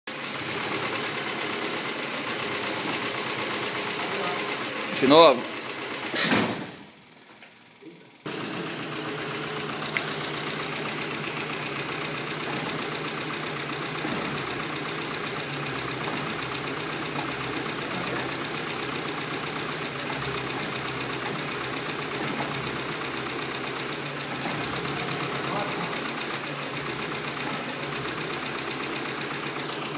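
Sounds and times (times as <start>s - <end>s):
car engine idling: 0.1s - 6.2s, 7.6s - 29.9s.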